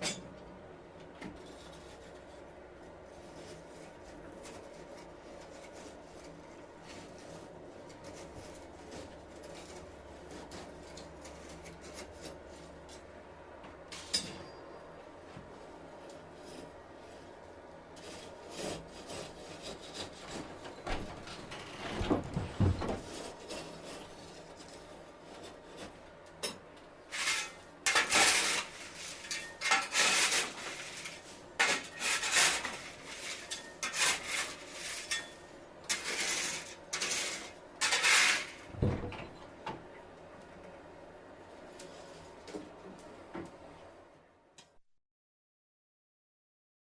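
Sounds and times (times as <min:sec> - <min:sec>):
hand file rasping on metal: 0:18.0 - 0:20.4.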